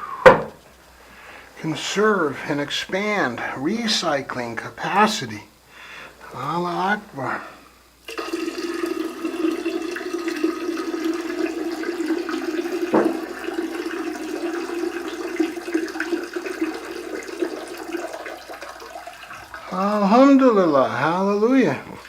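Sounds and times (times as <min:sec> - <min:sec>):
water running: 0:06.2 - 0:22.0.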